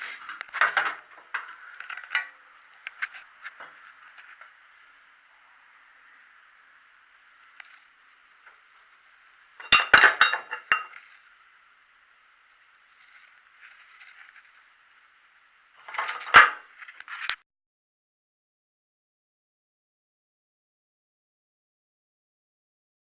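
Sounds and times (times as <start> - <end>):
metal tools clinking: 9.6 - 11.0.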